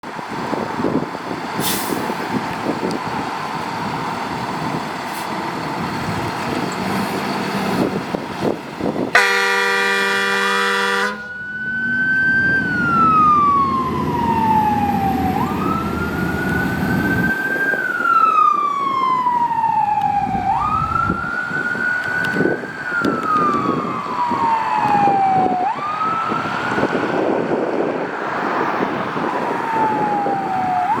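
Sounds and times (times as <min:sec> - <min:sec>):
truck engine and road noise: 0:00.0 - 0:31.0
fire engine air horn: 0:01.6 - 0:02.1, 0:09.1 - 0:11.5
siren wailing: 0:09.1 - 0:31.0.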